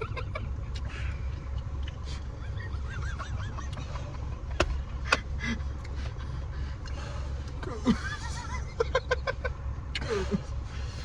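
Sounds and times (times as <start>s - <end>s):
car engine humming: 0.2s - 11.0s.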